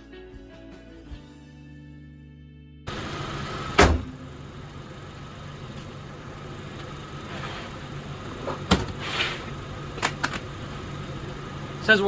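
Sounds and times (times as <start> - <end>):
car engine idling: 2.9 - 12.0.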